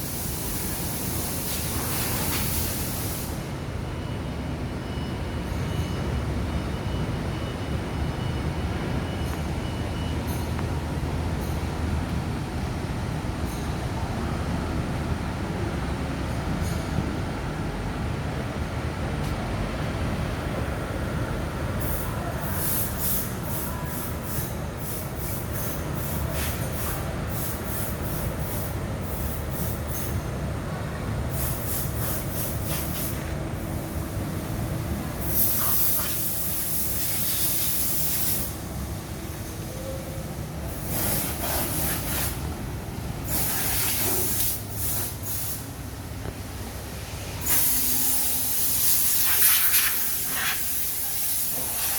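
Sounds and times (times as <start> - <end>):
bursts of hissing: 43.2 - 45.6.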